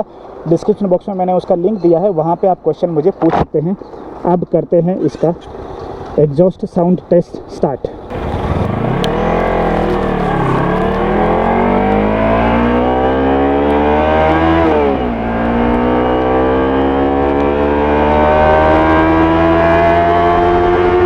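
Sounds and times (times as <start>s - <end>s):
motorcycle engine accelerating: 8.1s - 21.0s.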